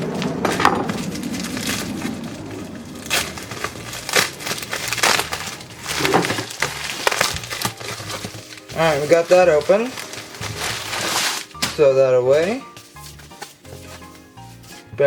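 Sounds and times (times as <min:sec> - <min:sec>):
packaging being torn open: 0:00.2 - 0:12.0.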